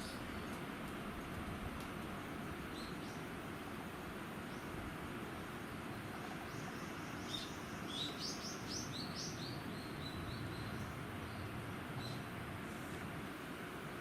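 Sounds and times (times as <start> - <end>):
low background noise: 0.0 - 14.0
songbird chirping: 2.7 - 3.4, 5.4 - 12.3.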